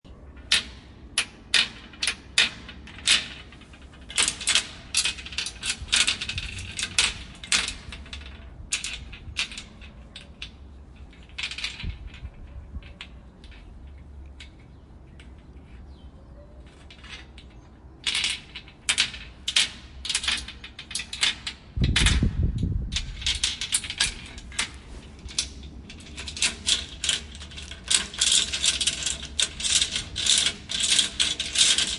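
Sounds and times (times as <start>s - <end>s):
metal chain rattling: 22.9s - 31.9s
padlocks clicking and knocking: 23.0s - 31.9s.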